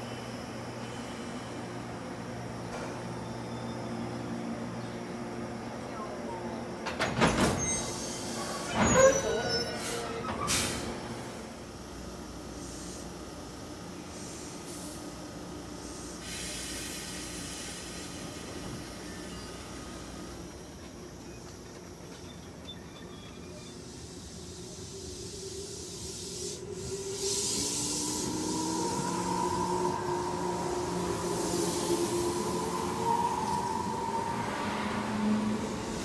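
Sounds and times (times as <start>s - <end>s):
train equipment hiss and hum: 0.0s - 36.0s.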